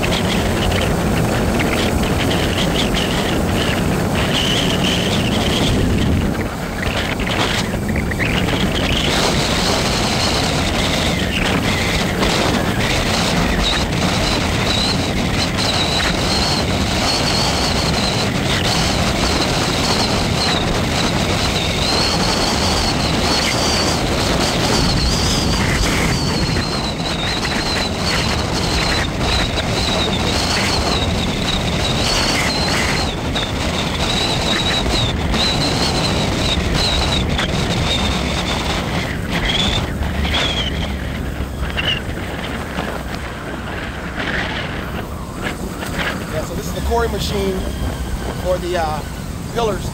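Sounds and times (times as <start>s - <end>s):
vehicle road and wind noise: 0.0s - 49.9s
wind buffeting microphone: 0.0s - 49.9s
thin high whine: 43.7s - 49.9s.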